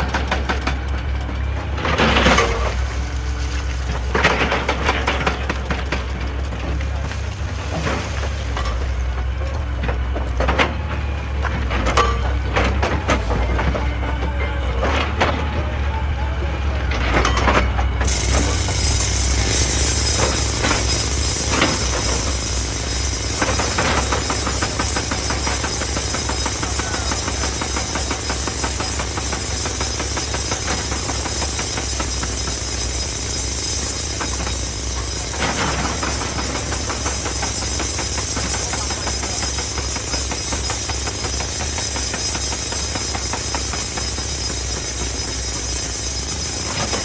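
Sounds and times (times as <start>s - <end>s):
excavator diesel engine: 0.0s - 47.0s
rapid continuous pounding: 18.0s - 47.0s.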